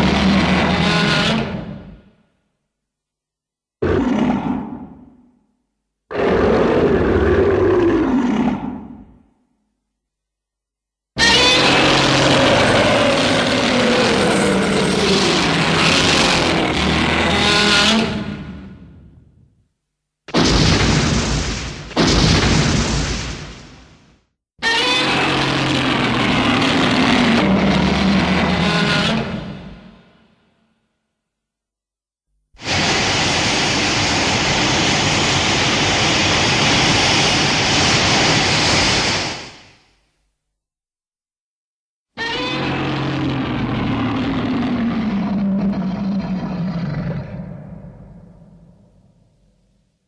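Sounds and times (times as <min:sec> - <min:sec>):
monster roar: 0:03.8 - 0:05.0, 0:06.1 - 0:09.2, 0:11.2 - 0:18.8, 0:25.0 - 0:29.7, 0:42.4 - 0:48.7
loud rushing blast: 0:20.3 - 0:24.1, 0:32.6 - 0:39.8.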